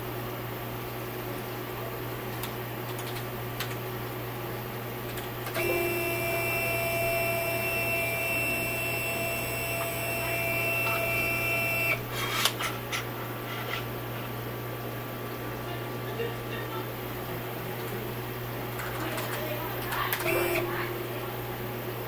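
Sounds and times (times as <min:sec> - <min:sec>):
steady low hum: 0:00.0 - 0:22.0
stepper motor whining: 0:05.6 - 0:12.0.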